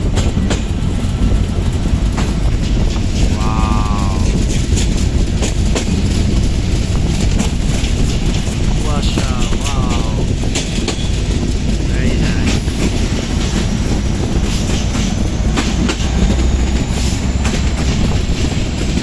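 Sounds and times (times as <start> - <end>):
wheels clattering over rail joints: 0.0 - 3.4, 4.2 - 19.0
train rumbling: 0.0 - 19.0.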